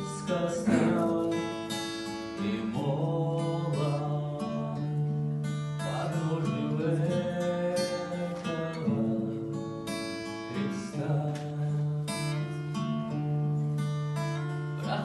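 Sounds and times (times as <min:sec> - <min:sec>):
person singing: 0:00.0 - 0:01.7
strummed acoustic guitar: 0:00.0 - 0:15.0.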